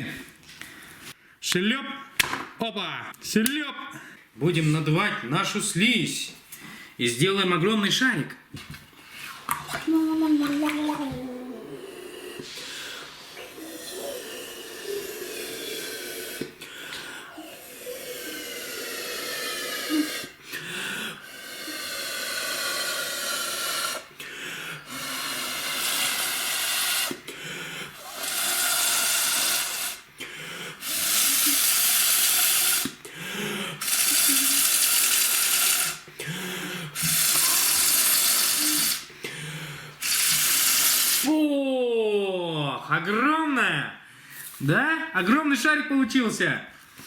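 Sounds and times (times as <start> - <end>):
hissing blows into slime: 9.9 - 16.6, 17.3 - 20.4, 21.2 - 24.1, 24.9 - 27.2, 28.0 - 30.1, 30.8 - 33.0, 33.8 - 36.1, 37.0 - 39.1, 40.0 - 41.4.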